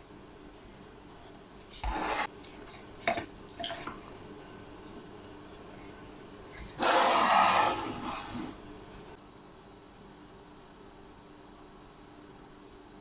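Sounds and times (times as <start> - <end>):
wood scraping: 6.6 - 8.8.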